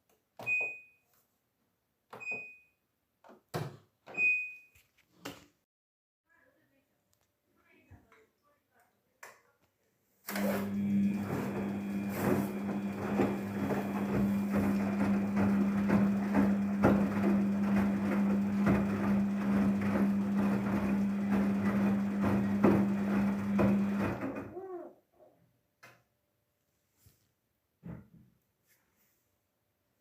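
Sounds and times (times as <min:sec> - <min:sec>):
washing machine motor hum: 0:10.3 - 0:24.6.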